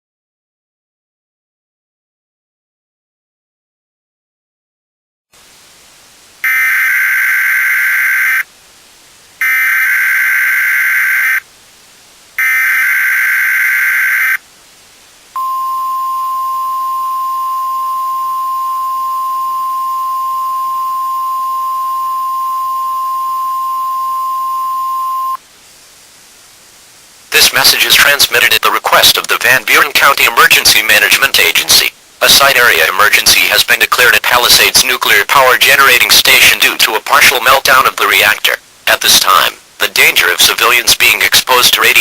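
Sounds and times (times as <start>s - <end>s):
steady single-pitch alert tone: 6.4s - 8.4s, 9.4s - 11.4s, 12.4s - 14.4s, 15.4s - 25.4s
warbling data header bursts: 6.4s - 8.5s, 9.4s - 11.4s, 12.4s - 14.4s, 15.4s - 25.4s.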